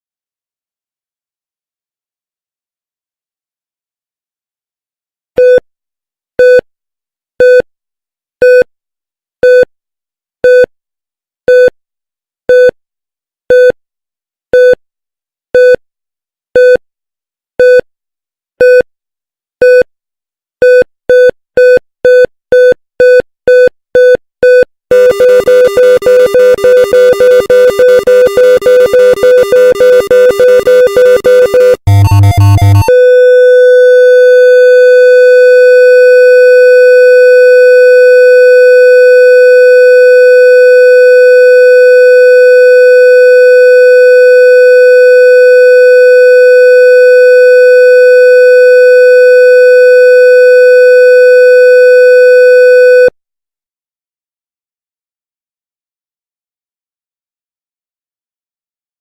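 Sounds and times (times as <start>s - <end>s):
heart-rate monitor beeps: 20.6s - 33.0s
alarm tones: 24.9s - 33.5s.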